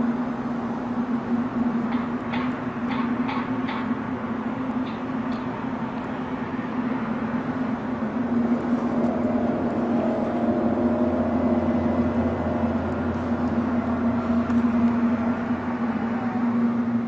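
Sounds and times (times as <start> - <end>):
steady droning hum: 0.0 - 17.0.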